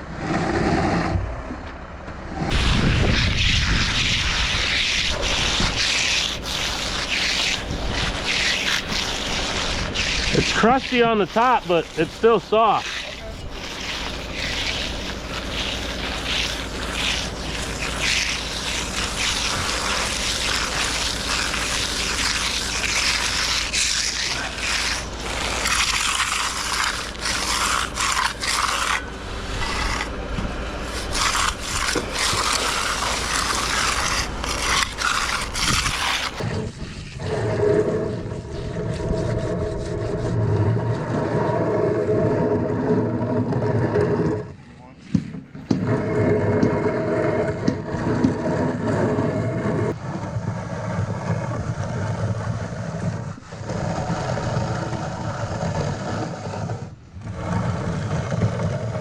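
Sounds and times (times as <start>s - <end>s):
wind rumbling on microphone: 0.0s - 10.6s, 27.7s - 44.6s, 45.4s - 59.0s
low steady hum: 0.0s - 53.4s
tool scraping concrete: 2.3s - 59.0s.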